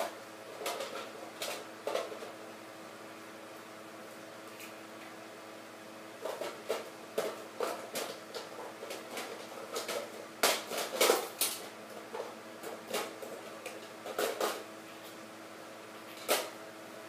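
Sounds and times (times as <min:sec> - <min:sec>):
plastic toys clicking and knocking: 0:00.6 - 0:02.3, 0:06.2 - 0:14.6.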